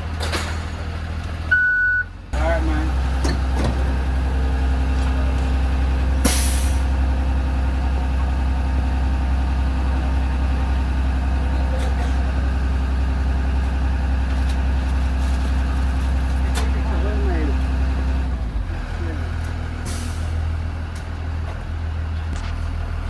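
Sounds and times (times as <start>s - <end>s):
diesel engine idling: 0.0s - 23.0s
air brakes hiss: 6.2s - 6.9s.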